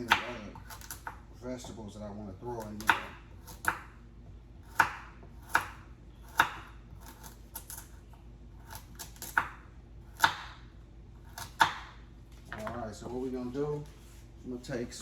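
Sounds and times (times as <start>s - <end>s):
knife chopping carrot on board: 0.0s - 1.9s, 2.5s - 4.0s, 4.6s - 8.0s, 8.6s - 12.8s.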